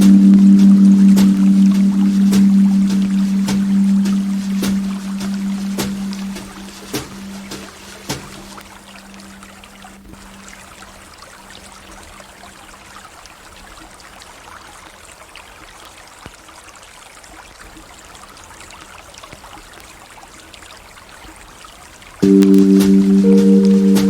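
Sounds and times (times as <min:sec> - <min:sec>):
loud sustained music chords: 0:00.0 - 0:09.4, 0:22.2 - 0:24.0
low held music note: 0:00.0 - 0:09.6, 0:22.2 - 0:24.0.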